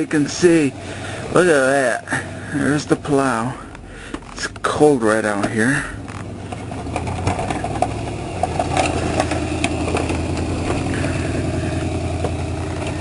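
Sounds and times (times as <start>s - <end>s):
truck engine humming: 0.0s - 13.0s
plow clicks: 3.7s - 11.2s, 12.2s - 13.0s.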